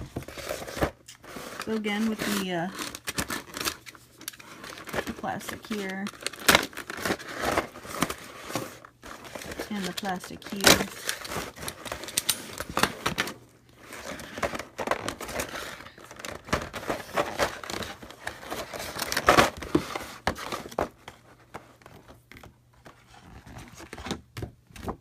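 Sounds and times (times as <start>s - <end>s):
plastic packaging crinkling: 0.0s - 24.0s.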